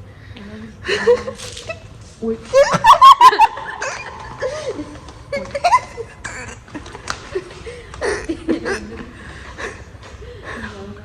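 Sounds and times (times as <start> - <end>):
people giggling and laughing: 2.5 - 10.8.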